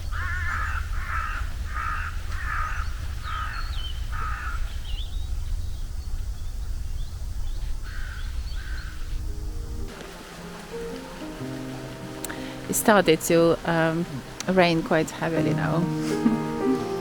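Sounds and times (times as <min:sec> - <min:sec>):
steady low rumble: 0:00.0 - 0:16.0
crow cawing: 0:00.1 - 0:04.7, 0:07.8 - 0:09.0.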